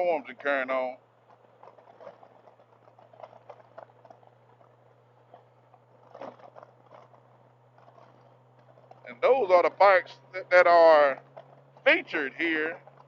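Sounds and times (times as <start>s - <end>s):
motorcycle ride low hum: 0.0s - 13.0s.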